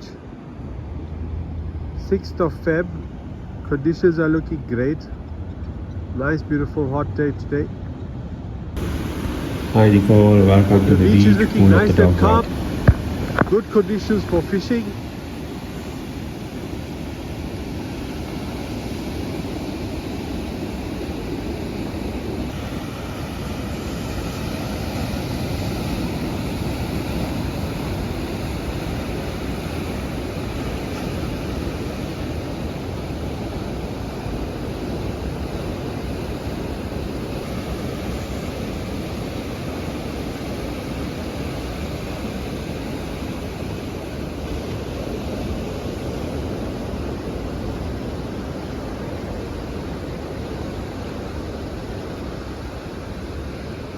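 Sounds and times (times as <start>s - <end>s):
ocean surf: 0.0s - 53.9s
wind on microphone: 8.8s - 13.8s.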